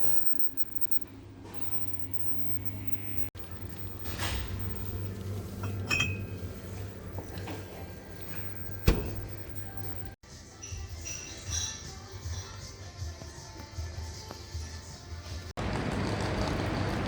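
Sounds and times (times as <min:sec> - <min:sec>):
glass clink: 0:05.6 - 0:06.4.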